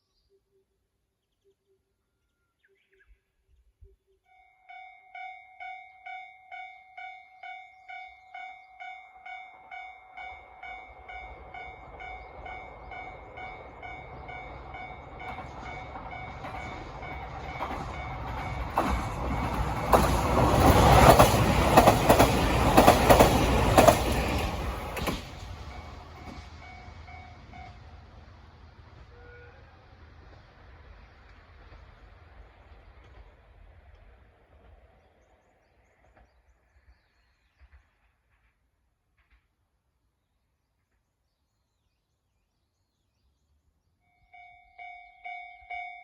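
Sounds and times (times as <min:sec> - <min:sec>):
train passing: 0:04.7 - 0:39.9
train wheels clacking: 0:10.2 - 0:34.9.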